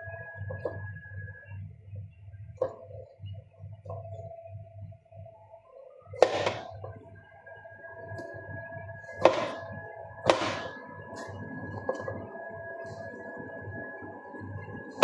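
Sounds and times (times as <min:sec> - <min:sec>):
faint steady tones: 0:00.0 - 0:15.0
low steady hum: 0:00.0 - 0:15.0
sharp ringing knocks: 0:09.2 - 0:10.8.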